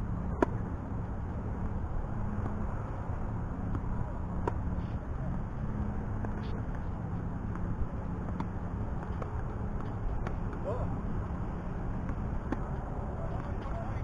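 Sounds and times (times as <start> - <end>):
low outdoor rumble: 0.0 - 14.0
tennis ball struck: 12.0 - 12.7.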